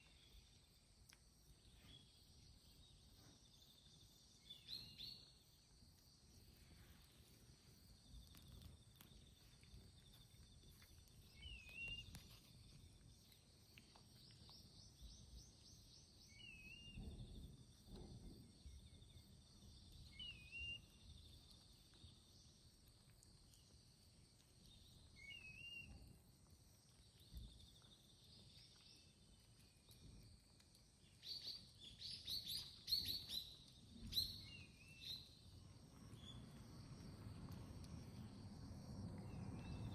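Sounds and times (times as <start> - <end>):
insect trill: 0.0 - 39.9
songbird whistled call: 11.4 - 12.2, 16.2 - 17.1, 20.1 - 21.0, 25.2 - 26.0, 31.2 - 33.5.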